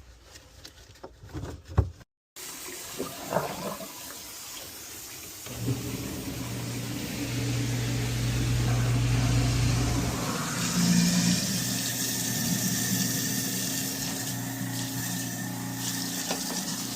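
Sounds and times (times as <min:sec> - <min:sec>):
water running into sink: 0:02.4 - 0:16.9
garbage disposal motor humming: 0:05.4 - 0:16.9.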